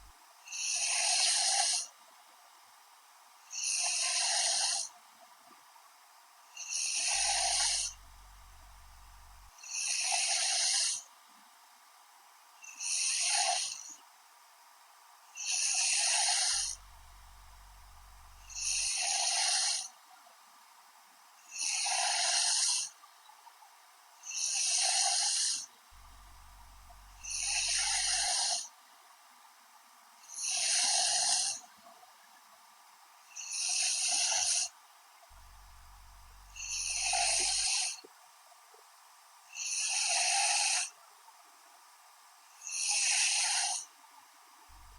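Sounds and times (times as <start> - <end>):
woman snoring: 0.6 - 1.8, 3.6 - 4.9, 6.7 - 11.0, 12.8 - 13.8, 15.4 - 19.9, 21.6 - 22.9, 24.3 - 25.6, 26.2 - 28.7, 30.3 - 31.6, 33.4 - 34.7, 35.4 - 38.0, 39.6 - 40.9, 42.6 - 43.8.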